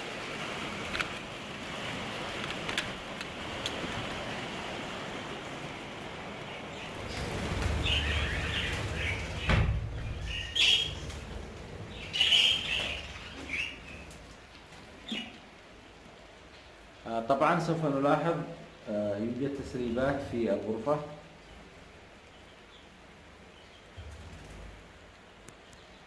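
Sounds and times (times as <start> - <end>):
steady hiss: 0.0 - 26.0
budgerigars chirping: 6.8 - 14.2, 15.0 - 15.4.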